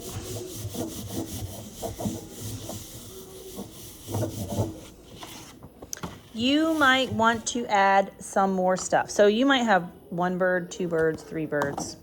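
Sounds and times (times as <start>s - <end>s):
paper rubbing and rustling: 0.0s - 5.6s.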